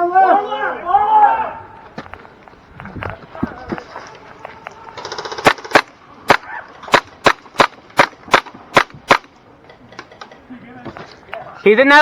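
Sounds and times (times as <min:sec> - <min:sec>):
airsoft gun shots: 0:04.9 - 0:09.3.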